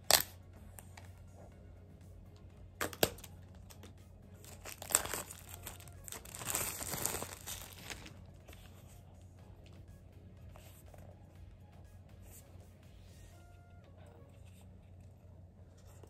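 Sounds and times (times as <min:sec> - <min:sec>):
packaging crinkling and tearing: 0:04.4 - 0:08.2.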